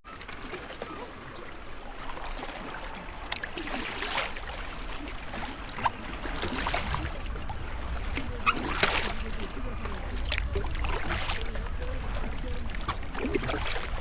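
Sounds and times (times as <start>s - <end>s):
water trickling and splashing: 0.0s - 14.0s
paddle strokes swishing: 2.4s - 11.6s
steady low rumble: 4.6s - 8.4s.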